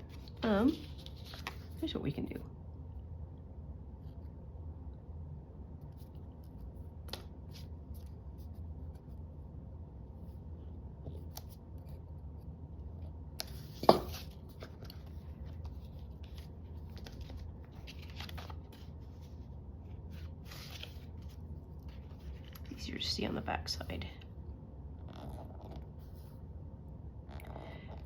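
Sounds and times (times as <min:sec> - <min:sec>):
paper scraping and rustling: 0:00.0 - 0:01.8, 0:13.4 - 0:22.9.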